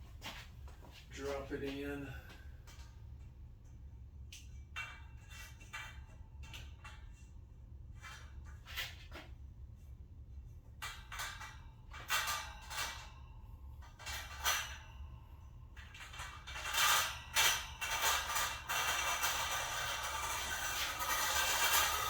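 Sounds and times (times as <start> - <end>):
steady low hum: 0.0 - 22.0
wire shelf rattling and scraping: 4.6 - 9.4, 10.7 - 22.0.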